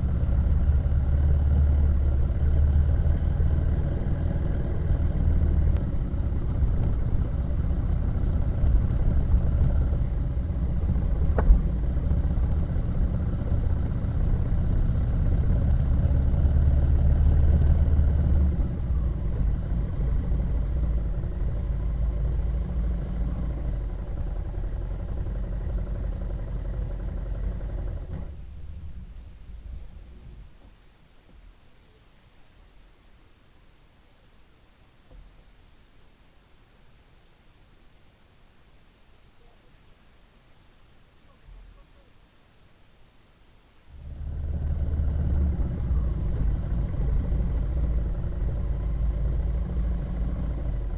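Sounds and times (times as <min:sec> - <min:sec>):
vehicle engine and road rumble: 0:00.0 - 0:32.8, 0:43.6 - 0:50.9.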